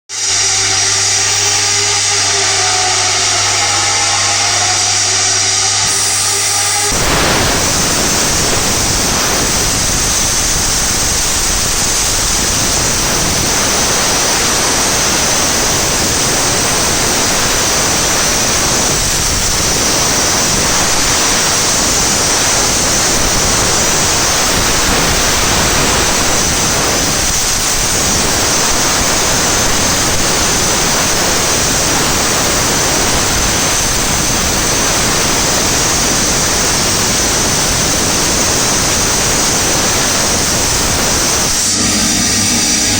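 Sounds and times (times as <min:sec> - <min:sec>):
high-pitched whistle: 0:00.1 - 0:09.6, 0:41.4 - 0:42.9
plasma arc hissing: 0:00.1 - 0:42.9.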